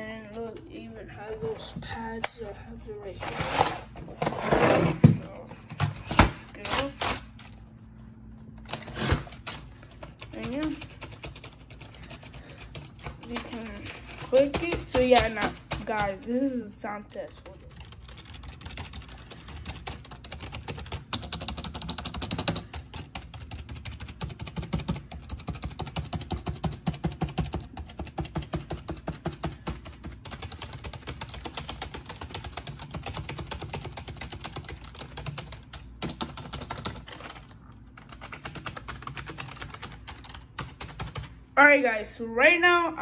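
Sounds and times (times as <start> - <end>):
keyboard keys clattering: 17.4 - 41.3.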